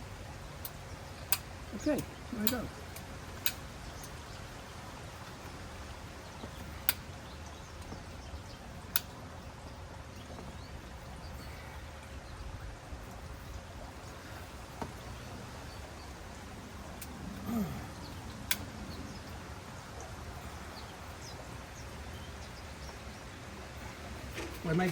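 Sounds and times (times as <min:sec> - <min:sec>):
low steady hum: 0:00.0 - 0:24.9
pipe cutter clicking: 0:00.6 - 0:04.2.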